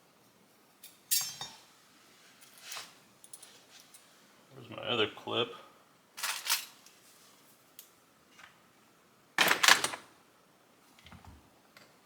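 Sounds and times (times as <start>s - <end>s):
tools clattering: 6.2s - 6.8s.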